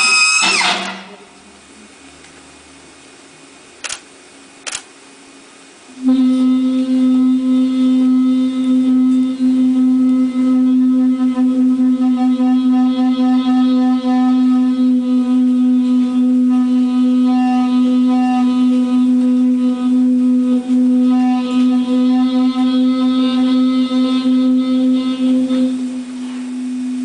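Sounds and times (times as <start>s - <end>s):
sustained drone note: 6.0s - 27.0s.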